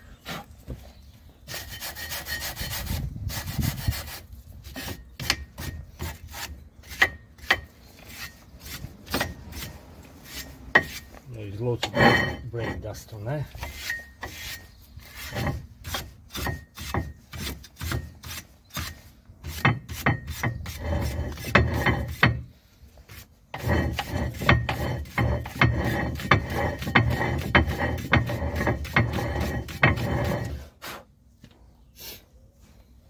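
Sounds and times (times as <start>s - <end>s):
brush scrubbing brake parts: 19.5s - 31.0s.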